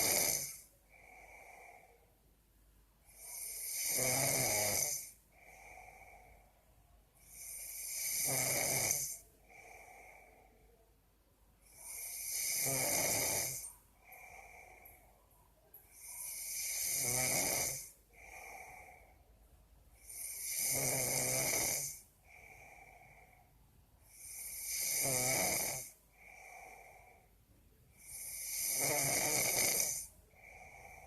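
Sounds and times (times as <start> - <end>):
person snoring: 0.0 - 2.1, 3.1 - 6.4, 7.2 - 10.7, 11.7 - 14.9, 15.9 - 19.2, 20.0 - 23.5, 24.1 - 27.3, 28.0 - 31.0
soft breath: 0.6 - 3.6, 5.1 - 7.8, 9.1 - 12.2, 13.5 - 16.5, 17.8 - 20.4, 21.9 - 24.7, 25.9 - 28.2, 30.0 - 31.0.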